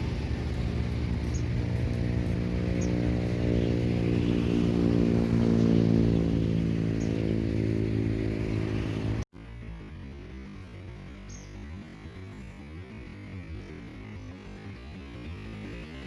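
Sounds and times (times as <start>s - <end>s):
boat engine running: 0.0s - 9.2s.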